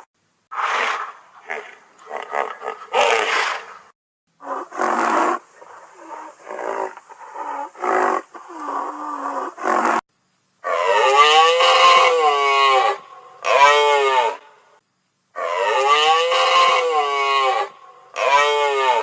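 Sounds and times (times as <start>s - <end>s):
rhinoceros calling: 15.4s - 19.0s.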